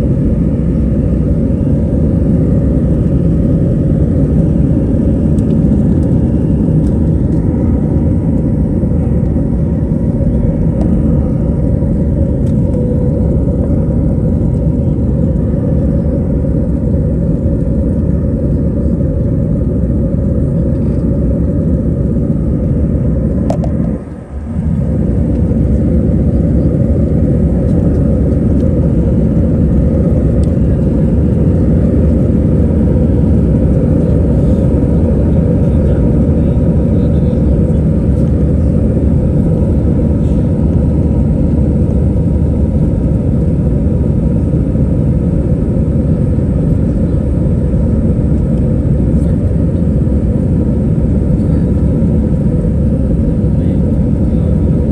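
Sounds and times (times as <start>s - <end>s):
jet engine cabin rumble: 0.0s - 54.9s.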